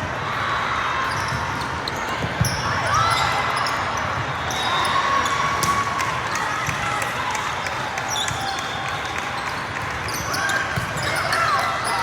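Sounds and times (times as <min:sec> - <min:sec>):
shoes squeaking on court floor: 0:01.1 - 0:05.7.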